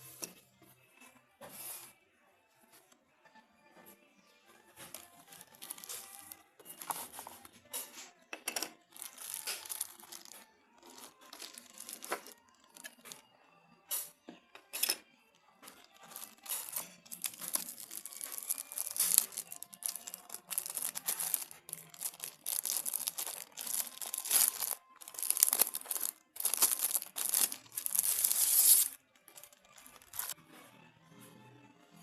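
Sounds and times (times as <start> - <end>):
packaging tearing and crinkling: 9.0 - 12.4, 15.9 - 30.4.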